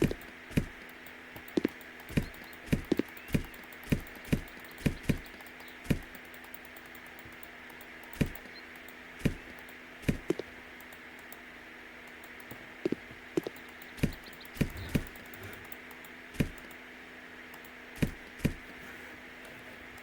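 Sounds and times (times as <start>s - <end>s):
knocks and taps: 0.0s - 10.5s, 12.2s - 15.8s, 16.4s - 16.8s
steady low hum: 0.0s - 20.0s.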